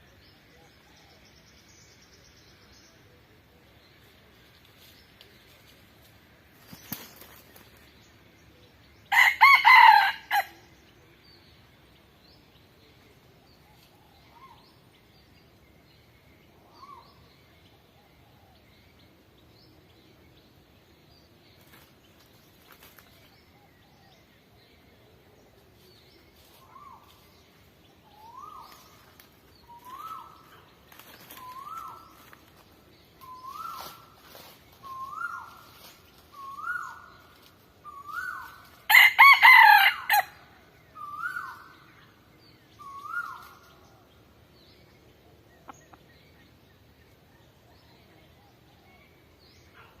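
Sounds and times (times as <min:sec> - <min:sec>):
rooster crowing: 0:09.1 - 0:10.5, 0:38.9 - 0:40.3.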